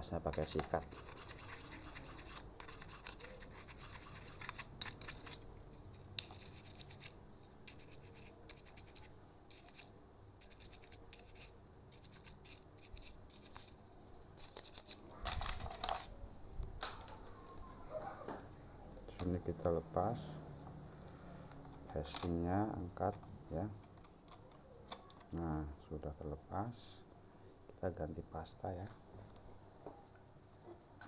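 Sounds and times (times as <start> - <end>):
brush scrubbing fan: 0.2 - 5.4.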